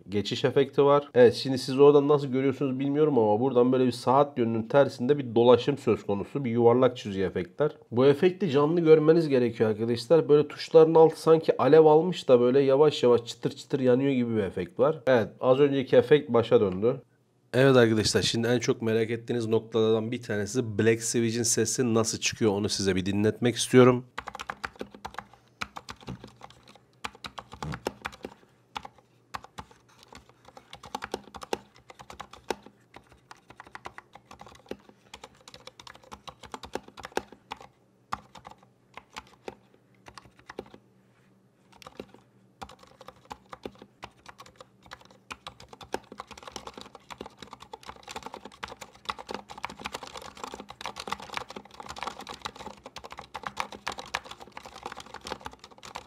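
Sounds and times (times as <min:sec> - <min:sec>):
mechanical keyboard typing: 0:24.2 - 0:40.8, 0:41.7 - 0:56.0.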